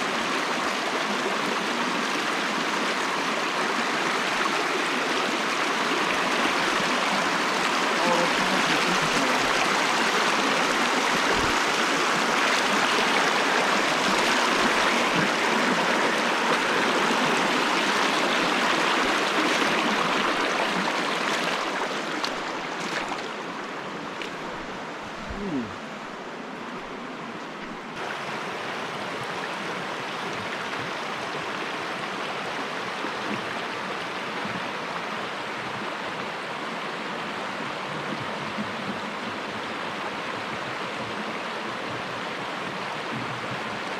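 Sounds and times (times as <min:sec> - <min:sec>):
creek rushing over rocks: 0:00.0 - 0:43.9.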